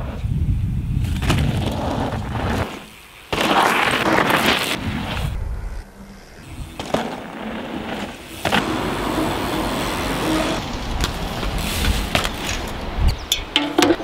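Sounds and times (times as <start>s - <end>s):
bike tyre and wind rush: 0.0s - 14.0s.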